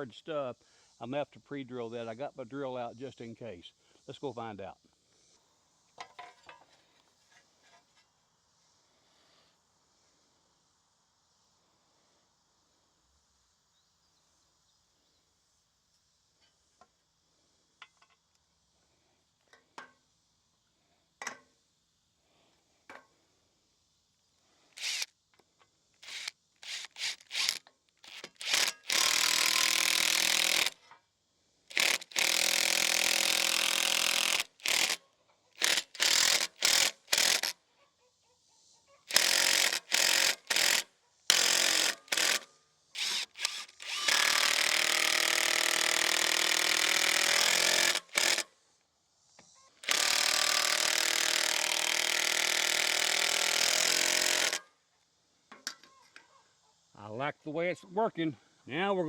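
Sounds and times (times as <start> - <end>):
power drill driving screws: 24.8 - 25.1, 26.0 - 30.8, 31.7 - 35.0, 35.6 - 37.6, 39.1 - 48.5, 49.8 - 54.7.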